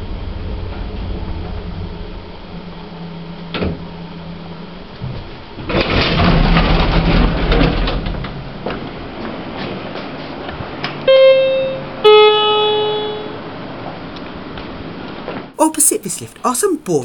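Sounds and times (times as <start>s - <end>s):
lift running with low hum: 0.0s - 5.6s.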